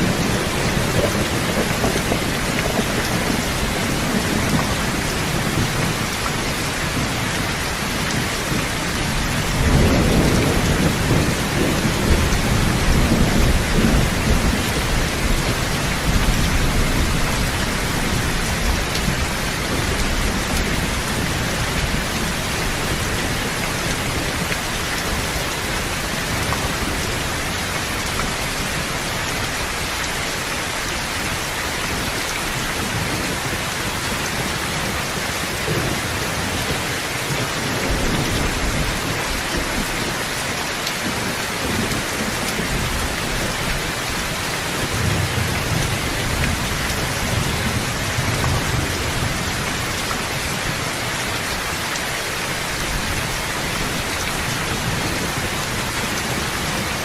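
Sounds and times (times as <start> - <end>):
low thunder rumbling: 0.0 - 40.3
heavy rain: 0.0 - 57.0.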